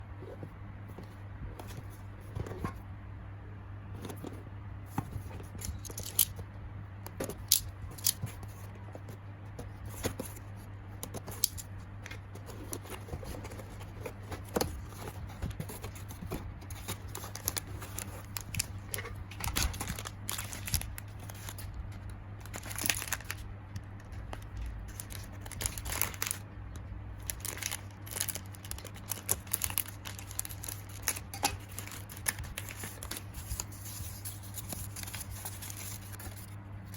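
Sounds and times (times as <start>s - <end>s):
steady low hum: 0.0s - 36.9s
plastic packaging crinkling: 10.0s - 36.5s.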